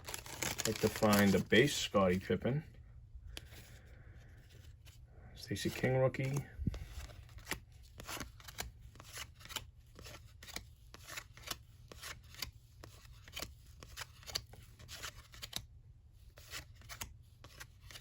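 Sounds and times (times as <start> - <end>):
cardboard cards flipping: 0.0 - 1.5, 5.6 - 15.7, 16.3 - 18.0.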